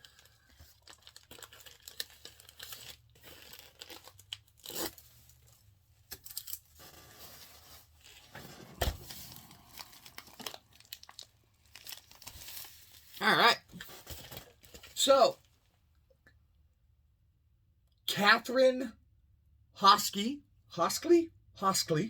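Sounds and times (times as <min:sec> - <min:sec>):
plastic mailer crinkling and tearing: 0:00.0 - 0:15.5.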